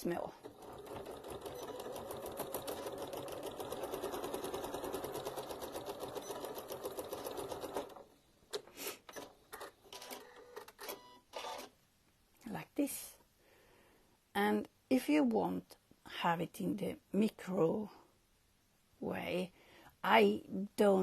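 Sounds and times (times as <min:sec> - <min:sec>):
sewing machine stitching: 0:00.1 - 0:11.0.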